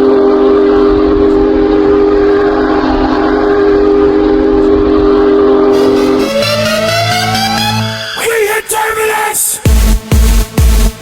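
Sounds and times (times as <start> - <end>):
goal horn low chord: 5.5 - 8.3.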